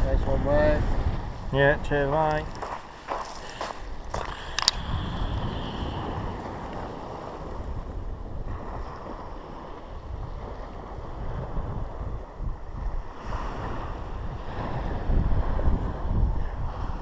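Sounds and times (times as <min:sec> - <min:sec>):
waves washing on shore: 0:00.0 - 0:17.0
wind buffeting microphone: 0:00.0 - 0:17.0
sharp click: 0:04.5 - 0:04.8.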